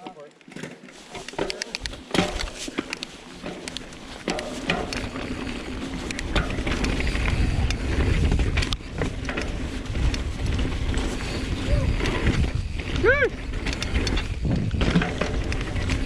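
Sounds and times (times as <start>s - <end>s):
bike clicks and rattles: 0.0s - 16.0s
bike tyre noise: 0.0s - 16.0s
wind rumble on microphone: 4.7s - 16.0s.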